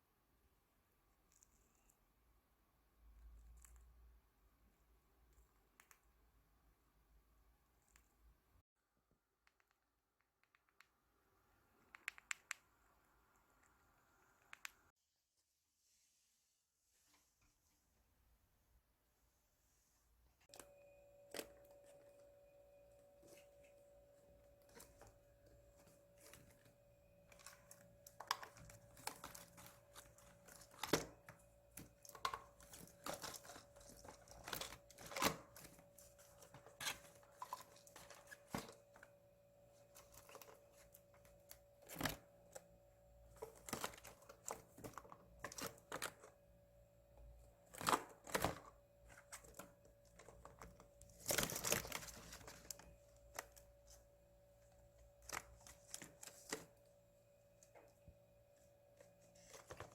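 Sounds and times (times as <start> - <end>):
faint steady hum: 17.0 - 59.9
crinkly tearing rustles: 27.4 - 38.8, 49.4 - 53.9.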